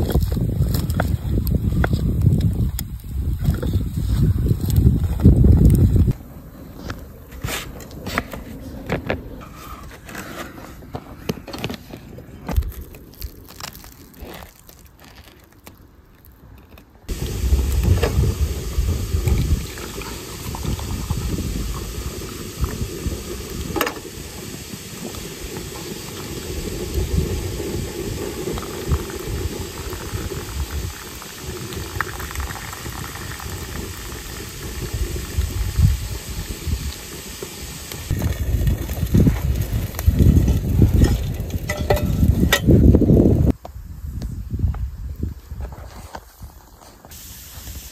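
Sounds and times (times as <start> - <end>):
food sizzling and bubbling: 0.0 - 6.2, 17.1 - 43.6
gusty low rumbling: 0.0 - 9.4, 17.1 - 45.9.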